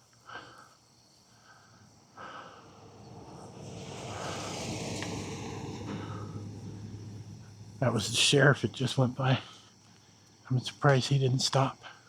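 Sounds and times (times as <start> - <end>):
car driving past: 1.8 - 10.1.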